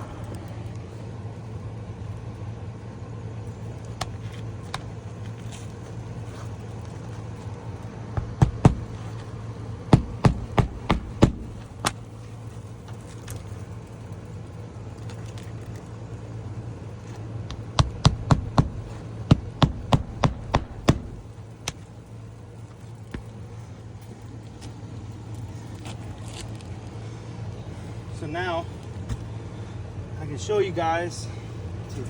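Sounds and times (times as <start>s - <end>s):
steady low hum: 0.0s - 32.0s
hammer striking nails: 8.2s - 9.0s, 9.9s - 12.0s, 17.5s - 21.8s.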